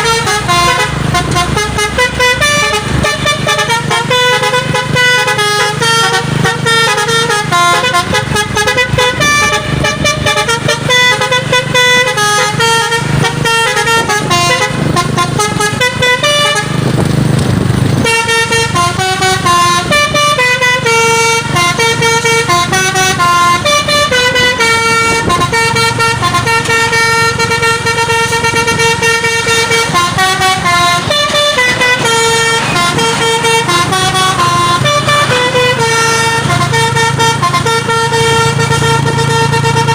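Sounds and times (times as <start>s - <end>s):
truck engine hum: 0.0s - 39.9s
truck horn playing melody: 0.0s - 39.9s.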